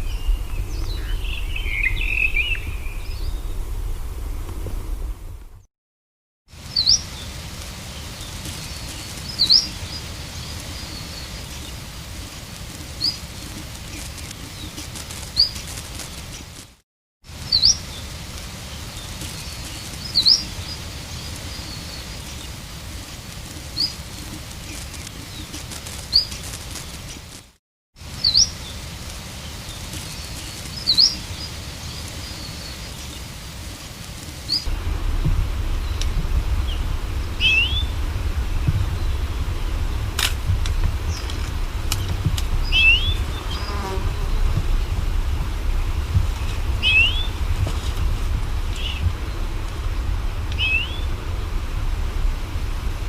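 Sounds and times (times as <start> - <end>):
high bird chirps: 0.0 - 3.5
low rumble: 0.0 - 5.7, 34.7 - 53.0
recording hiss: 6.5 - 53.0.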